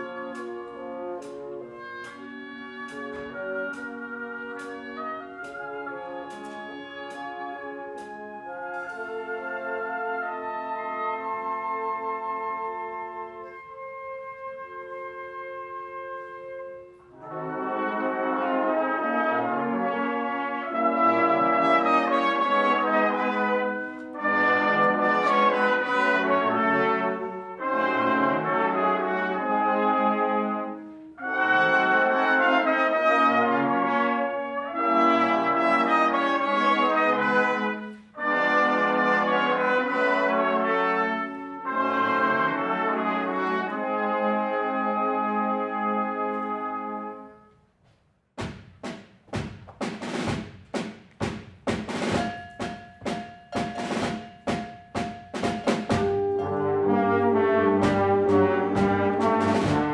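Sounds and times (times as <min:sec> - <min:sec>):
wind orchestra brass chords: 0:00.0 - 0:47.6, 0:52.1 - 0:59.9.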